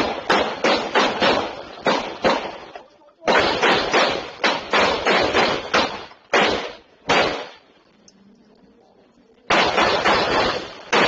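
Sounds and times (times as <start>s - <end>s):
gunshots: 0.0s - 7.8s, 9.5s - 11.0s.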